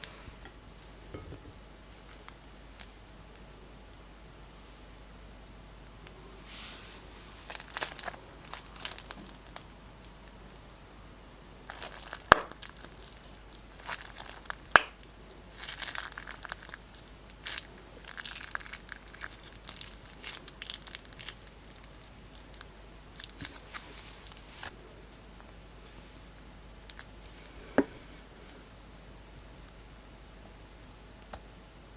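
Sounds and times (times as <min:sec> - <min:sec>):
plastic bags crinkling: 0:07.4 - 0:10.2, 0:11.7 - 0:24.7.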